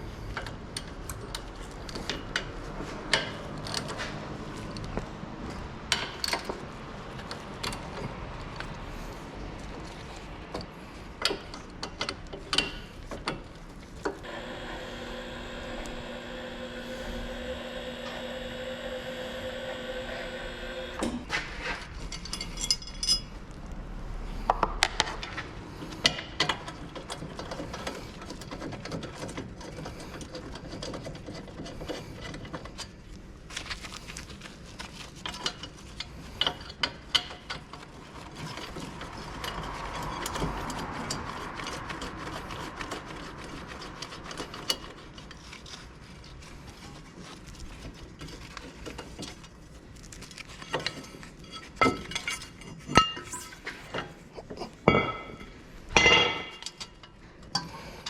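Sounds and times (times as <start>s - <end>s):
hand tools clanking on brake parts: 10.5s - 14.4s
motor-driven whine: 14.2s - 21.2s.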